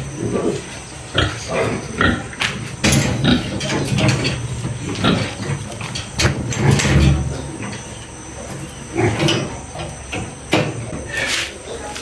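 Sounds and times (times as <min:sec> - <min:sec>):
pigs grunting: 0:00.0 - 0:12.0
knocks and clatter: 0:02.4 - 0:07.4.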